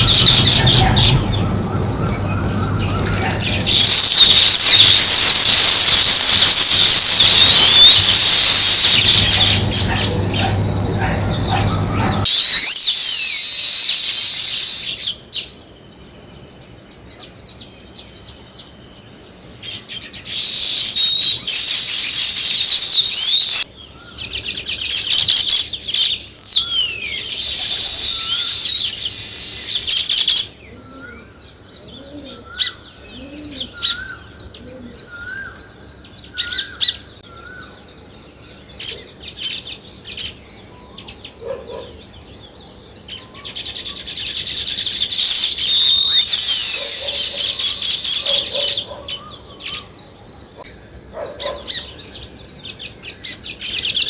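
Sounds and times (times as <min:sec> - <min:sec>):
bird call with rising hook: 0:00.0 - 0:15.0
songbirds chirping chorus: 0:00.0 - 0:54.0.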